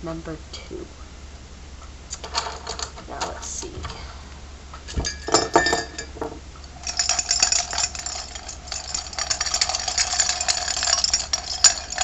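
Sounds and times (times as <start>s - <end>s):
markers and pencils clattering: 6.8s - 12.0s.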